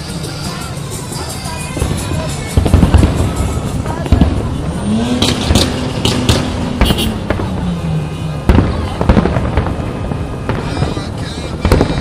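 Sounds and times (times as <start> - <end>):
fireworks bangs and crackles: 0.0 - 12.0.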